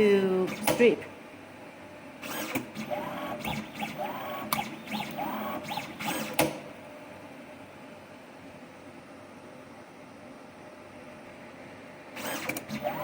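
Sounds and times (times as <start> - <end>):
machine motors whining: 2.2 - 6.7, 12.2 - 13.0
sharp mechanical clicks: 2.2 - 6.7, 12.2 - 13.0.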